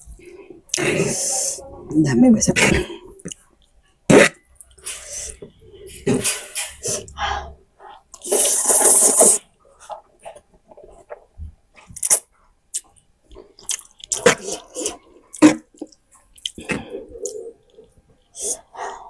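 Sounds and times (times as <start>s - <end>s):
loud noodle slurp: 8.2s - 9.4s
wet chewing and lip smacking: 11.8s - 18.7s.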